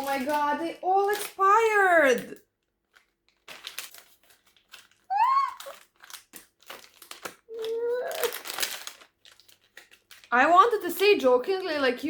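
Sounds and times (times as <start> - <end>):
plastic wrappers crinkling: 0.0 - 12.0.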